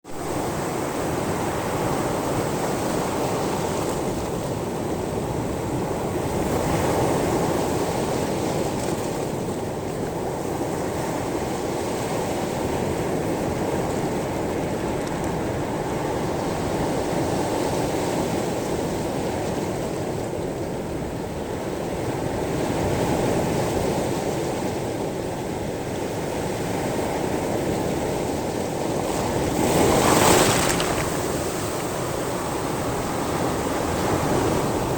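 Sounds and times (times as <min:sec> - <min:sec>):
waves washing over pebbles: 0:28.9 - 0:34.6.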